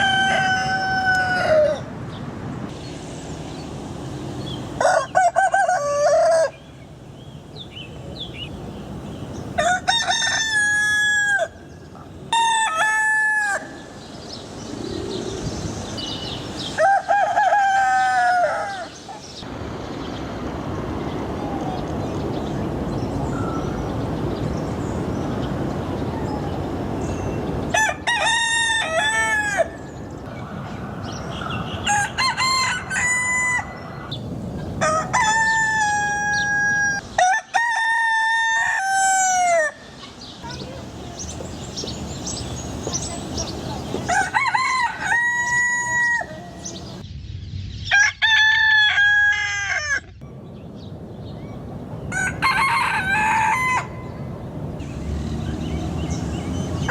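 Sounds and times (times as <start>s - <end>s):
roosters crowing: 0.0s - 2.0s, 4.7s - 6.7s, 9.4s - 19.5s, 27.7s - 30.2s, 31.3s - 47.0s, 47.9s - 50.2s, 52.1s - 56.9s.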